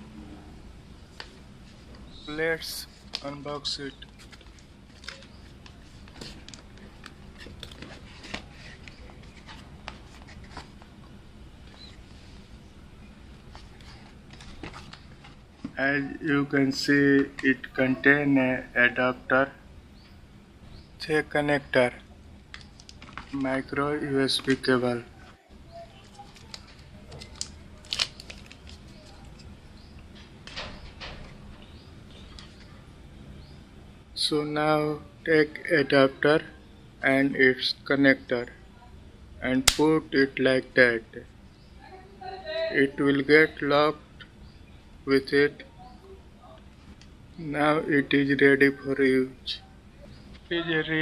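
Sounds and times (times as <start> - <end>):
low steady hum: 0.0 - 51.0
cardboard and plastic rustling: 4.0 - 10.9, 13.4 - 15.8, 22.6 - 23.6, 24.4 - 29.5.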